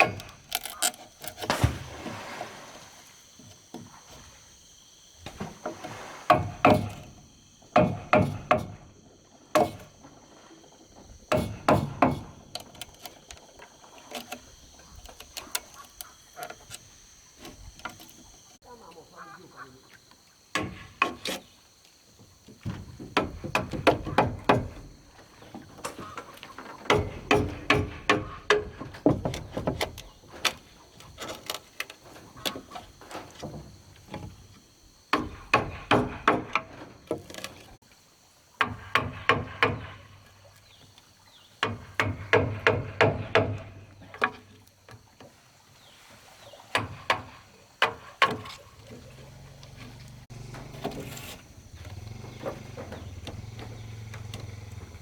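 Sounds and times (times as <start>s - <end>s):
hand tool striking bamboo: 0.0s - 1.8s, 6.3s - 7.0s, 11.3s - 13.0s, 26.8s - 29.9s, 41.6s - 43.7s.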